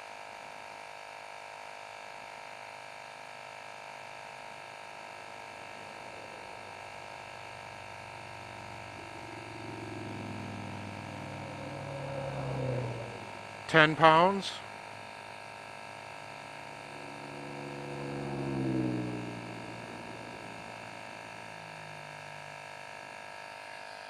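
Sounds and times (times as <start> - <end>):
electric compressor buzzing hum: 4.1 - 22.9.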